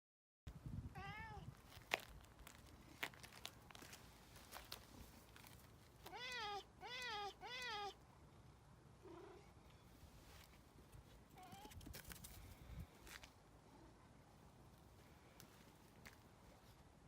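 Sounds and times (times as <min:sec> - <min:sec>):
cat meowing: 0:01.0 - 0:01.5, 0:06.1 - 0:08.0.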